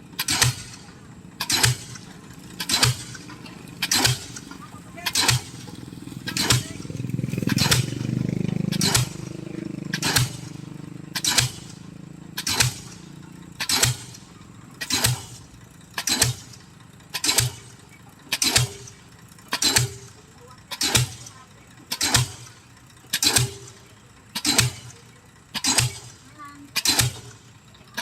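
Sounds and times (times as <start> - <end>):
engine running: 0.0 - 28.0
pile driver strikes: 0.2 - 8.1, 8.7 - 15.4, 16.0 - 16.6, 17.2 - 18.9, 19.5 - 21.3, 21.9 - 22.5, 23.2 - 23.8, 24.4 - 25.0, 25.6 - 26.2, 26.8 - 27.4.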